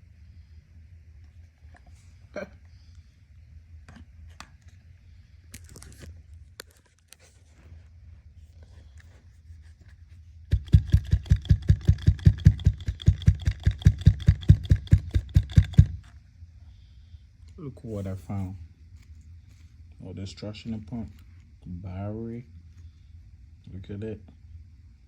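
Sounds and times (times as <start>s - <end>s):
small clicks and scrapes: 5.5s - 7.9s
pump rattling when shaken: 10.5s - 16.1s.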